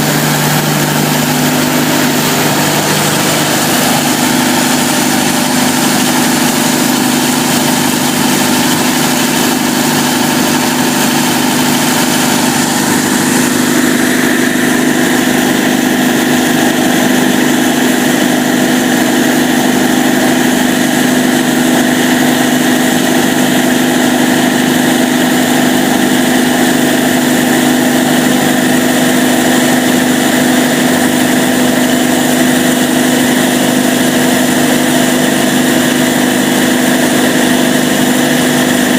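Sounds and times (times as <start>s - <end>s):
diesel generator drone: 0.0s - 38.9s.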